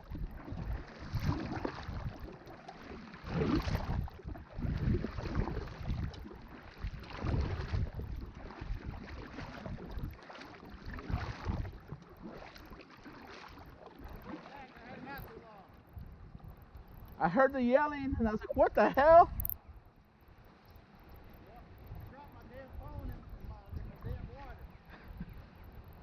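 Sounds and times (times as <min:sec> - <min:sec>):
kayak paddle strokes in water: 0:00.0 - 0:19.2.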